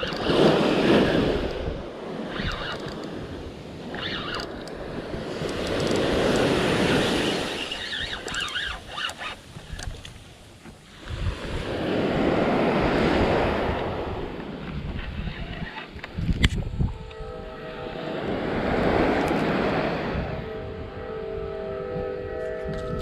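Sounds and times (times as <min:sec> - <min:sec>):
ocean surf breaking: 0:00.0 - 0:14.8, 0:17.2 - 0:21.3
wind on microphone: 0:00.0 - 0:23.0.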